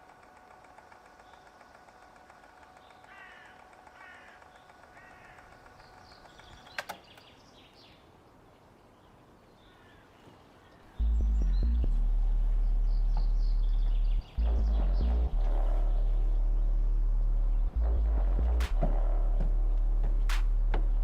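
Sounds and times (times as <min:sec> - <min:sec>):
faint steady hum: 0:00.0 - 0:21.0
bird calls: 0:00.9 - 0:21.0.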